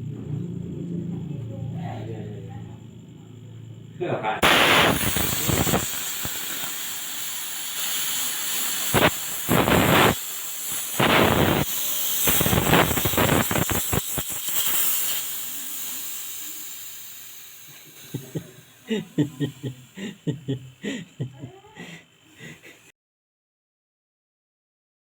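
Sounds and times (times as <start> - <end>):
crackling: 4.4 - 16.4
gas hissing through tubing: 4.4 - 22.9.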